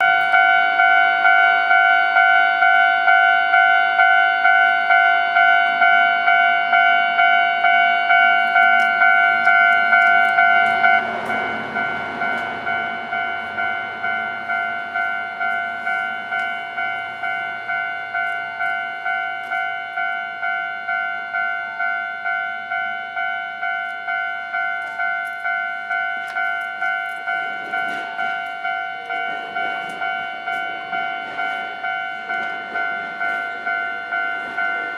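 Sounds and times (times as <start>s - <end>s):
level-crossing warning bell: 0.0s - 34.9s.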